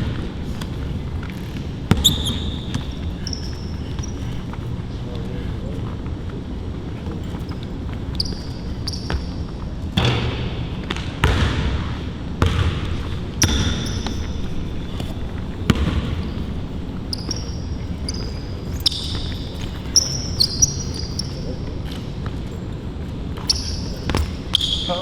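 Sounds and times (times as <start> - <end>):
basketball bouncing on court: 0.0 - 4.4, 8.2 - 9.4, 10.0 - 22.4, 23.4 - 24.9
sneakers squeaking: 0.0 - 25.0.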